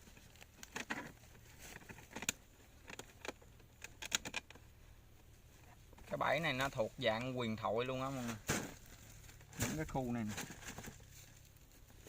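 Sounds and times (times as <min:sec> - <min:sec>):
snake trap clicking and rattling: 0:00.1 - 0:04.7.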